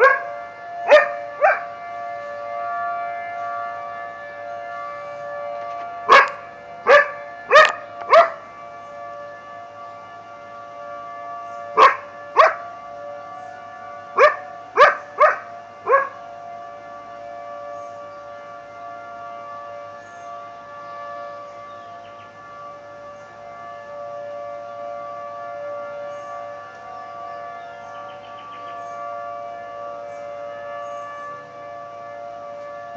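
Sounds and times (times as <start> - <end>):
dog barking: 0.0 - 0.3, 0.9 - 1.6, 6.1 - 8.4, 11.8 - 12.6, 14.2 - 16.1
tornado siren: 0.0 - 32.9.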